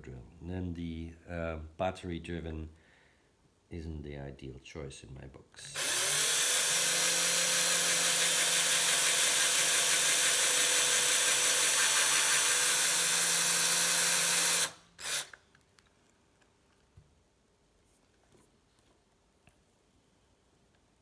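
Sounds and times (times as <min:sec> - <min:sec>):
electric drill whining: 0:05.8 - 0:15.4.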